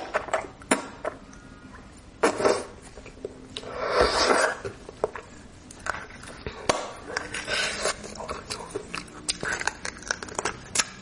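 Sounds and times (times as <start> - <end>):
person slurping: 3.6 - 4.8, 7.0 - 9.9.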